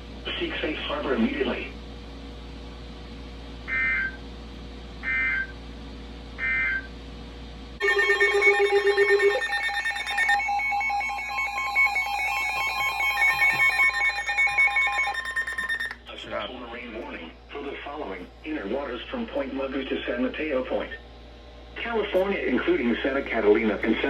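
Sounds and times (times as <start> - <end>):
pulsing electronic alert tone: 7.8 - 16.0
warbling data bursts: 7.8 - 16.0.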